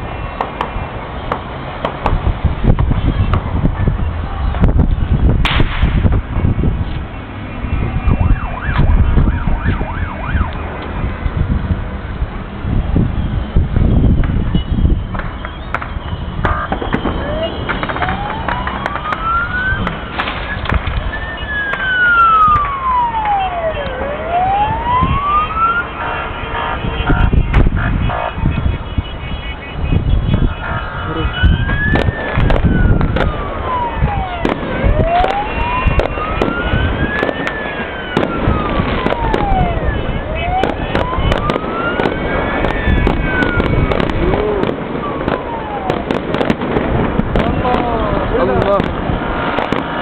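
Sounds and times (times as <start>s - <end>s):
fireworks bangs and pops: 0.3s - 10.0s, 12.5s - 24.0s, 26.0s - 50.0s
siren wailing: 7.5s - 11.2s, 14.8s - 50.0s.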